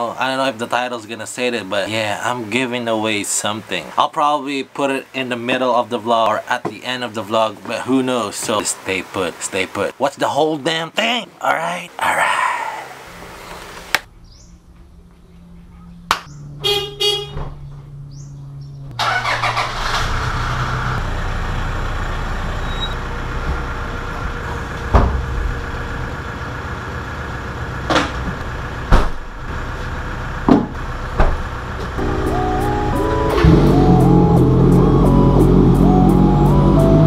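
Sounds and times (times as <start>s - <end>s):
horn toot: 16.6s - 17.6s, 32.0s - 37.0s.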